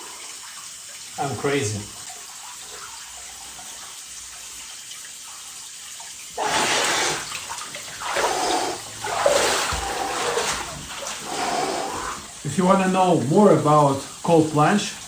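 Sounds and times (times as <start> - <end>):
faint steady hiss: 0.0 - 4.7, 6.3 - 15.0
water splashing: 0.0 - 15.0.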